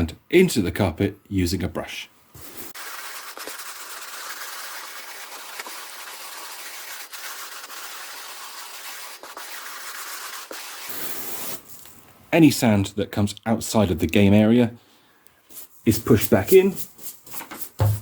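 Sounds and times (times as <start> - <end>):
brush scrubbing carpet: 2.4 - 11.6.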